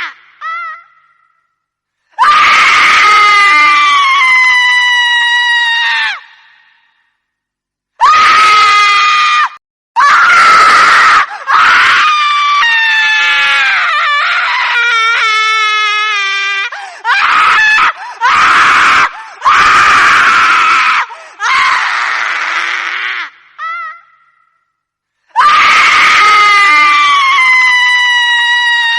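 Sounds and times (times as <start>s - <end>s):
high-pitched screams: 0.0s - 1.6s, 2.2s - 7.0s, 17.0s - 24.6s, 25.4s - 28.9s.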